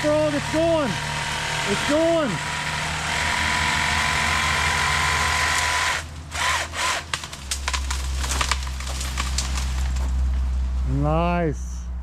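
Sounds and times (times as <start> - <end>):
drone motors whining: 0.0 - 7.0
low hum: 0.0 - 12.0
crackling bursts: 3.8 - 10.6.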